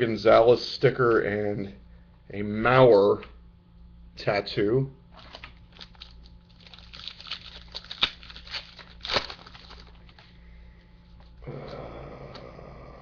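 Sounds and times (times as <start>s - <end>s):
foil wrapper crinkling: 5.1s - 10.3s.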